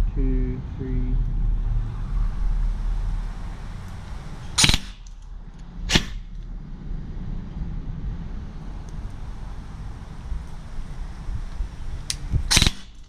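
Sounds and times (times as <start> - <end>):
wind rumble on microphone: 0.0 - 13.0
airsoft gun firing bursts: 4.6 - 5.0.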